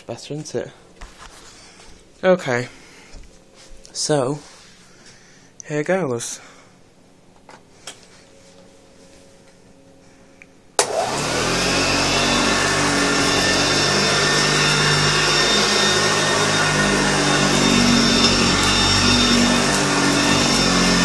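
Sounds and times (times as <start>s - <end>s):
vacuum cleaner motor whining: 10.8s - 21.0s.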